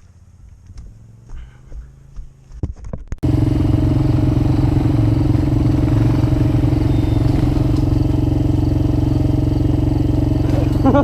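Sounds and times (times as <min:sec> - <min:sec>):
atv engine running: 0:03.2 - 0:11.0.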